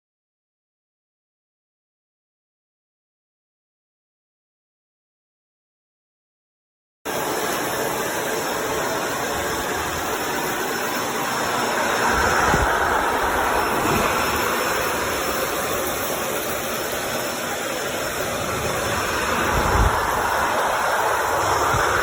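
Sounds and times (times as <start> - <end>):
vacuum cleaner running: 7.1 - 22.0.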